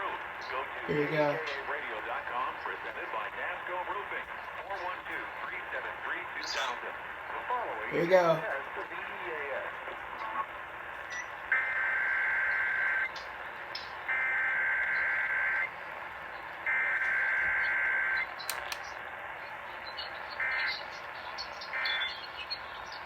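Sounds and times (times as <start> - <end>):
radio hiss: 0.0 - 23.0
harsh buzzing data tones: 10.2 - 23.0.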